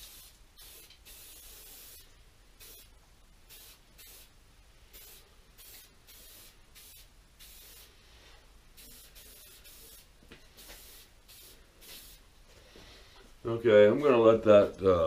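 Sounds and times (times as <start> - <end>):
aerosol spray hissing bursts: 0.0 - 8.1, 8.7 - 12.2.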